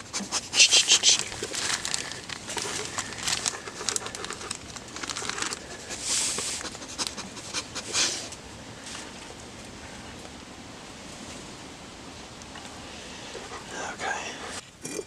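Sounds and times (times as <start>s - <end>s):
short hissing bursts: 0.2s - 1.3s.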